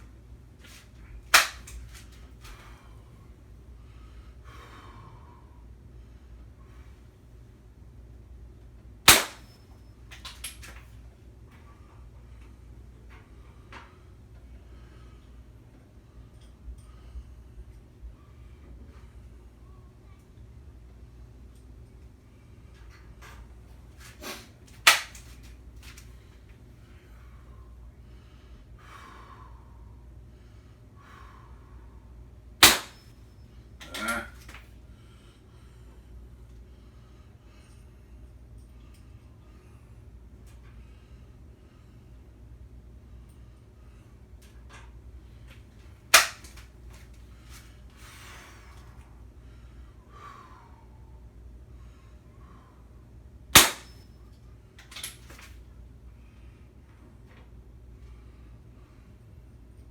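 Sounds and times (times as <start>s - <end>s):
air pistol shot crack: 1.3s - 1.8s, 9.1s - 9.6s, 24.2s - 25.3s, 32.6s - 33.1s, 46.1s - 46.6s, 53.6s - 54.0s.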